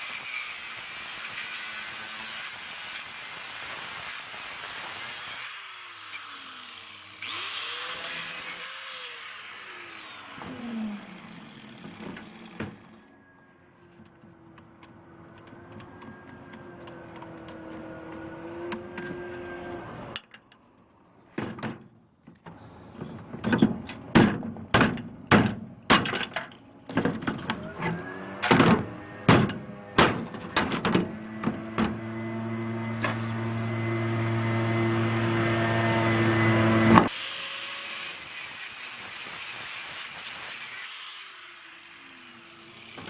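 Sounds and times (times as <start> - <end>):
metal scrap knocks and bangs: 21.4 - 32.1, 32.9 - 33.4
motor humming: 27.5 - 37.1.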